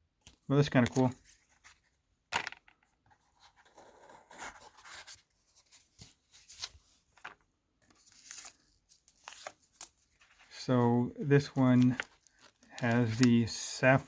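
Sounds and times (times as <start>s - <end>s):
packaging rustling: 11.3s - 14.0s.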